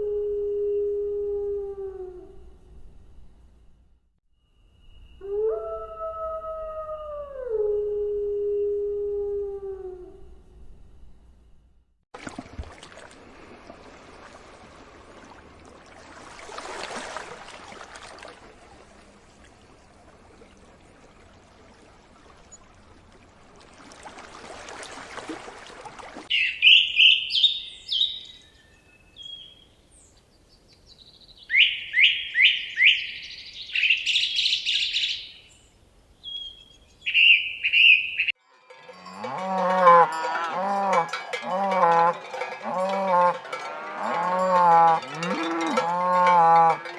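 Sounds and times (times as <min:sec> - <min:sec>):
faint outdoor hiss: 0:00.0 - 0:24.4, 0:25.0 - 0:46.9
bird chirping: 0:26.3 - 0:39.2
cow mooing: 0:38.6 - 0:46.9.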